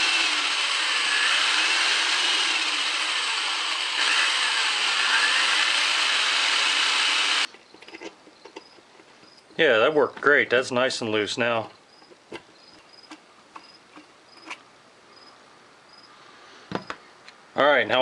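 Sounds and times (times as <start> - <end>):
power drill spinning: 0.0 - 7.5.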